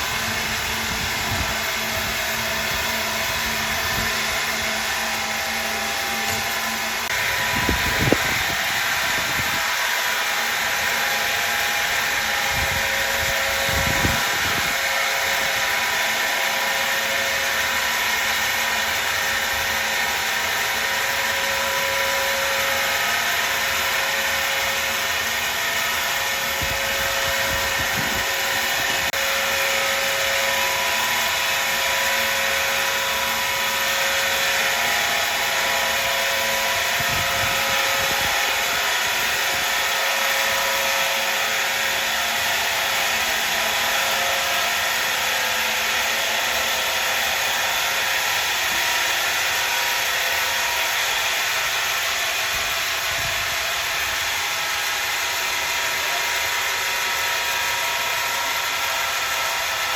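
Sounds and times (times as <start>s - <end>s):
woodworking machinery whining: 0.0s - 59.9s.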